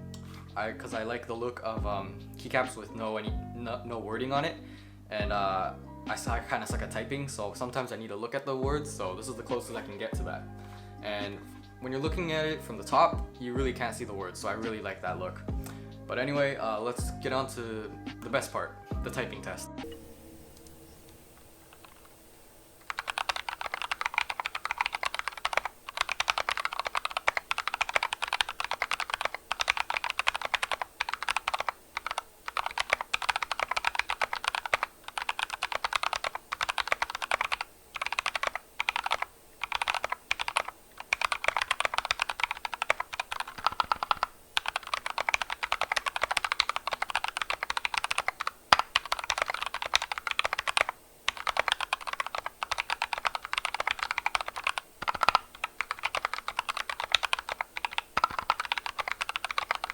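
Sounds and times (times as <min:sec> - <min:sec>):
mechanical keyboard typing: 0:21.6 - 0:22.2, 0:22.8 - 0:59.9.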